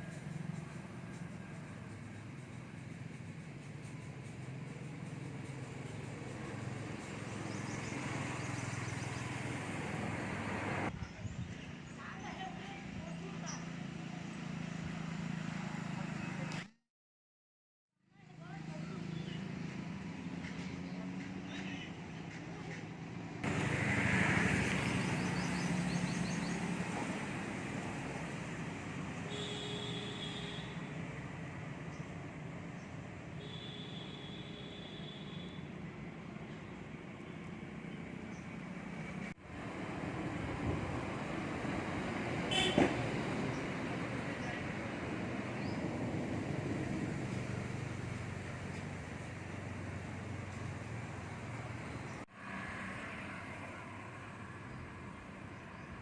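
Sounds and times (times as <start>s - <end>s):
vehicle passing on road: 0.0s - 11.0s, 11.7s - 16.7s, 18.3s - 56.0s
vehicle engine running: 18.2s - 32.8s.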